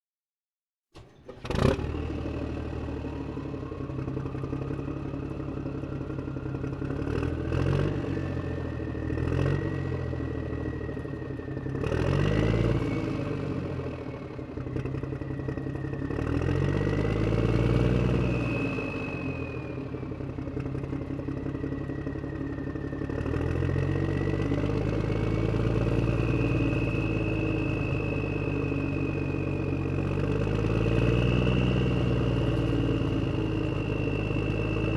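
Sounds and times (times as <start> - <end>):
clunks: 0.9 - 1.9
tractor engine running: 0.9 - 34.9
whine climbing in pitch: 15.0 - 34.9.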